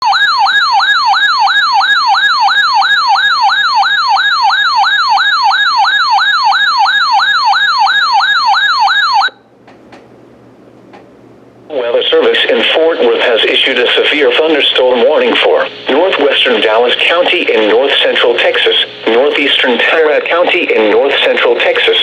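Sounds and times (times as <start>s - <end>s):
electronic siren alarm yelping: 0.0s - 9.5s.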